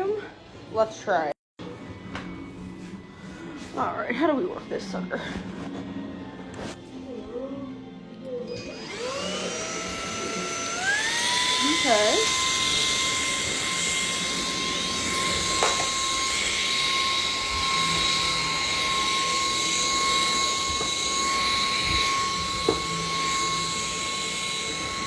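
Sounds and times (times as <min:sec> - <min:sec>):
vacuum cleaner motor whine: 0:08.3 - 0:25.0.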